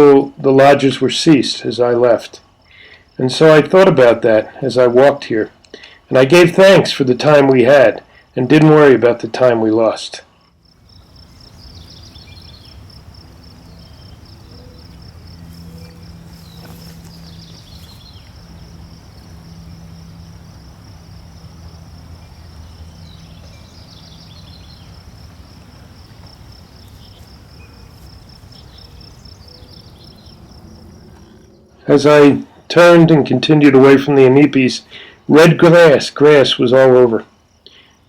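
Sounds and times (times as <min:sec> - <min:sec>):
insects trilling: 0:00.0 - 0:38.0
low steady rumble: 0:10.6 - 0:32.6.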